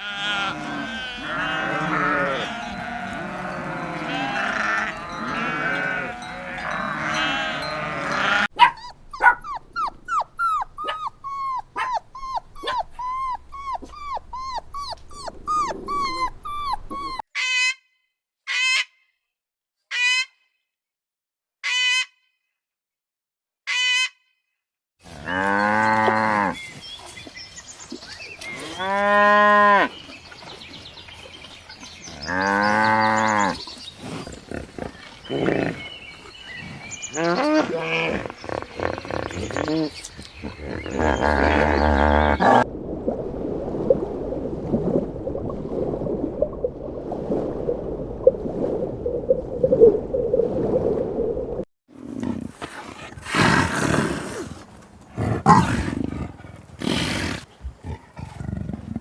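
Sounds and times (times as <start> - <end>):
cow mooing: 0.0 - 8.5, 52.0 - 58.4
sheep and goats bleating: 0.0 - 8.5
dog yapping and barking: 8.3 - 17.2, 52.1 - 56.8.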